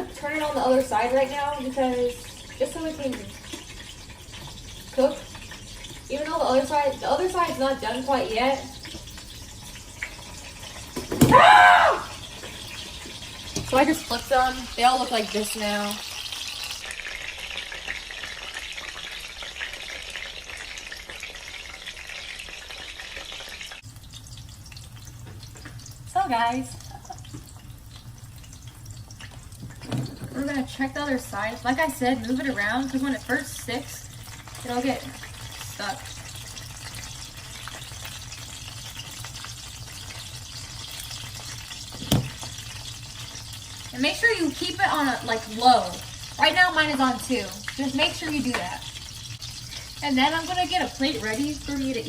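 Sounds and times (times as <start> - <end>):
dumplings sizzling in oil: 0.0 - 52.0.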